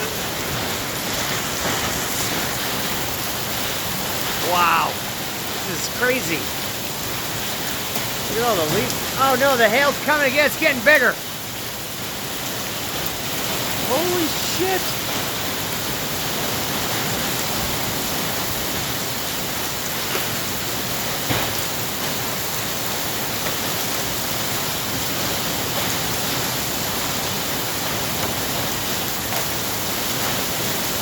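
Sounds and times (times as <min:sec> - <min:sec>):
hail and heavy rain: 0:00.0 - 0:31.0
sharp hailstone strikes: 0:21.2 - 0:22.2.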